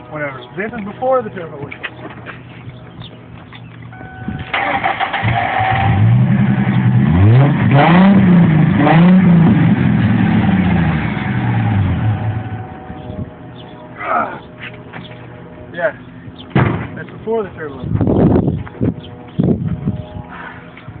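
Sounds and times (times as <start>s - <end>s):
car engine revving: 3.9s - 13.7s.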